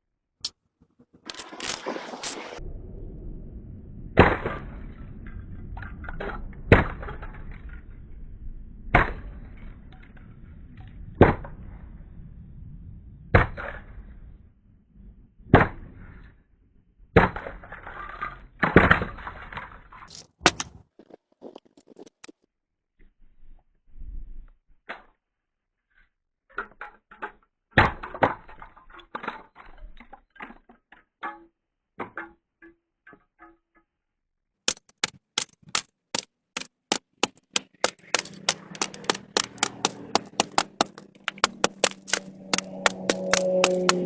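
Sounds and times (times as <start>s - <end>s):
low rumble: 1.4s - 15.4s
plastic alarm clock being smashed: 34.7s - 44.0s.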